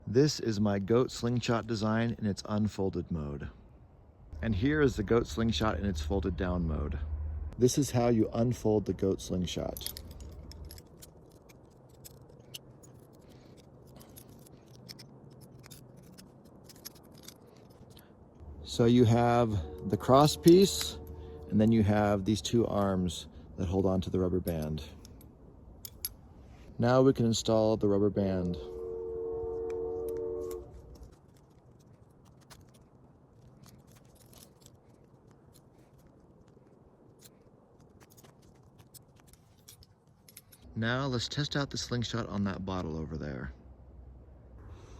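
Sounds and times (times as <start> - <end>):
multitool clicking and scraping: 9.6 - 18.4, 19.2 - 23.5
steady tone: 18.4 - 23.6.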